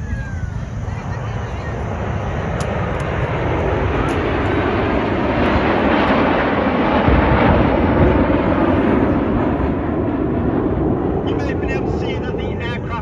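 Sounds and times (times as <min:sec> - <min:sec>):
model airplane engine flying past: 0:00.0 - 0:13.0.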